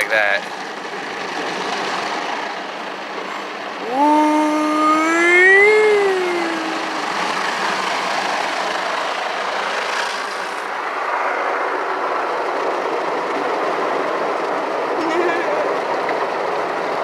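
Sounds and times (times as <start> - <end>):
pitched hum: 3.8 - 8.6.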